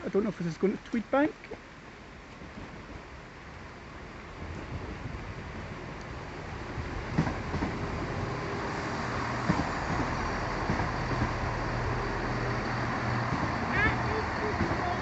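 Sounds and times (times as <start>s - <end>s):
train engine and rail drone: 0.0s - 15.0s
wheels clicking over rail joints: 13.2s - 15.0s.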